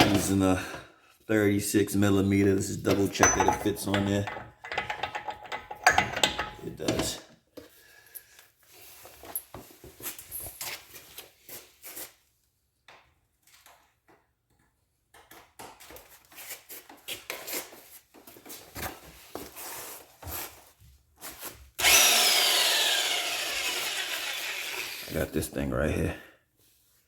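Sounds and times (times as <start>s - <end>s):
hand tools clicking and clinking: 0.0s - 0.8s, 2.9s - 7.2s.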